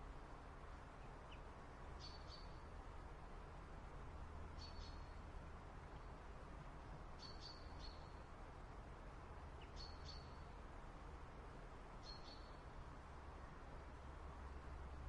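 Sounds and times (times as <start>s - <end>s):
faint outdoor hiss: 0.0s - 15.0s
small birds chirping: 1.0s - 2.7s, 4.5s - 5.2s, 7.1s - 8.3s, 9.5s - 10.5s, 12.0s - 12.7s.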